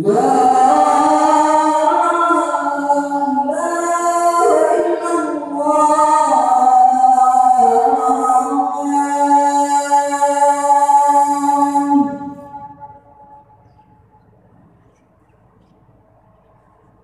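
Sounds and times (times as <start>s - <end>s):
voices singing a cappella: 0.0s - 13.1s.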